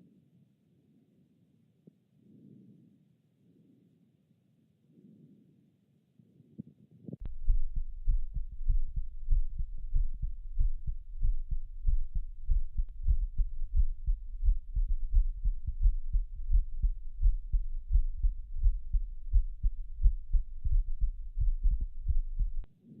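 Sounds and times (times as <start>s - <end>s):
low dull heartbeats: 7.2s - 22.7s.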